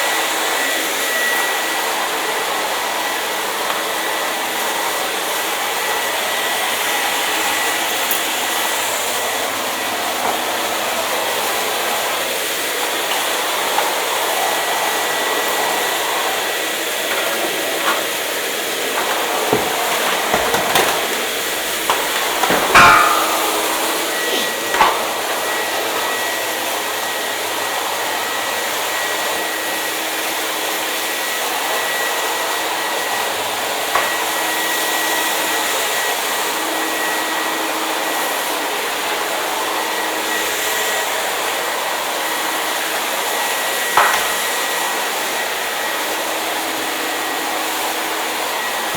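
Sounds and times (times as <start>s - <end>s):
hair dryer running: 0.0s - 48.9s.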